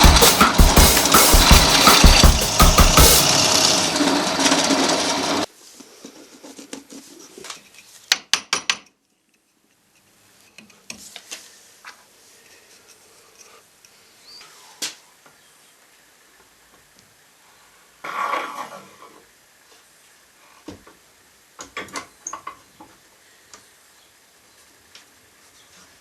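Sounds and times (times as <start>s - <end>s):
sharp knocks: 0.0s - 3.4s
loud dense sound: 0.0s - 4.6s.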